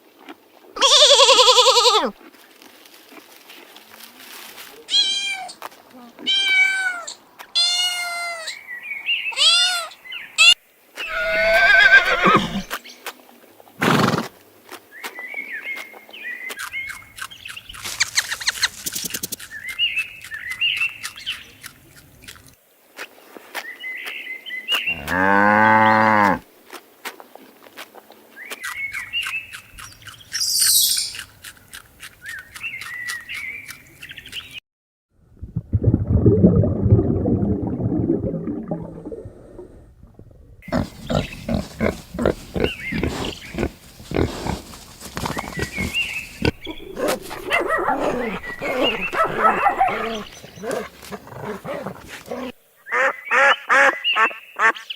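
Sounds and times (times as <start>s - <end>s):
farm animal calls: 9.3s - 12.7s, 40.6s - 54.9s
short bird chirps: 28.5s - 31.3s.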